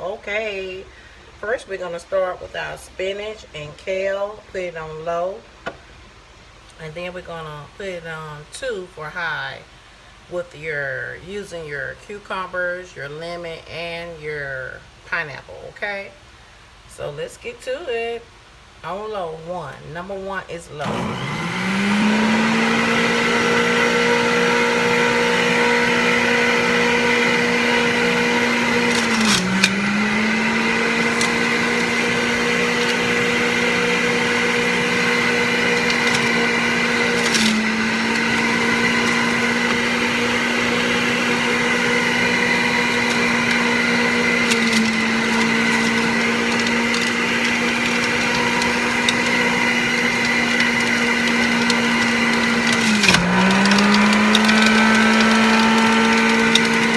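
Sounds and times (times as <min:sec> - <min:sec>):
juicer knock: 0:20.8 - 0:56.9
juicer motor running: 0:20.8 - 0:56.9.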